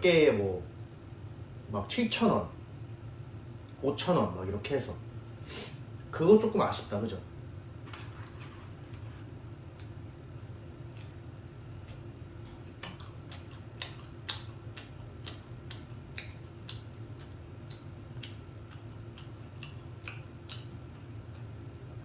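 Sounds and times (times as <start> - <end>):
steady low hum: 0.0 - 22.0
eating clicks and taps: 12.8 - 20.8.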